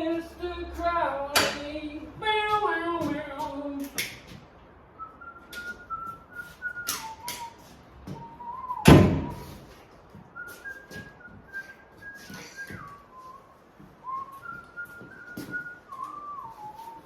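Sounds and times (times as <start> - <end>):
man whistling a tune: 5.0 - 9.6, 10.4 - 17.0
loud thump: 8.8 - 9.5.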